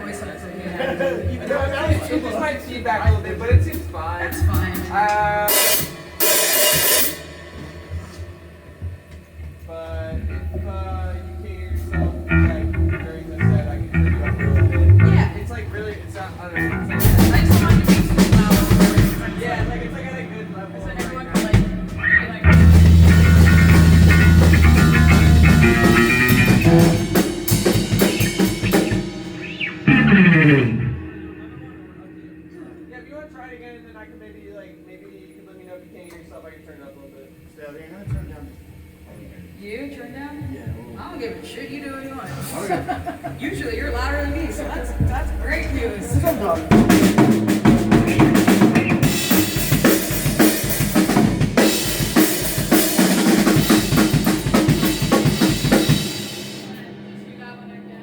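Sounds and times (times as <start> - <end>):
drum hits with cymbals: 1.9 - 32.5, 41.9 - 58.0
rock band playing live: 11.8 - 15.8, 16.6 - 20.0, 20.9 - 32.9, 43.3 - 57.1.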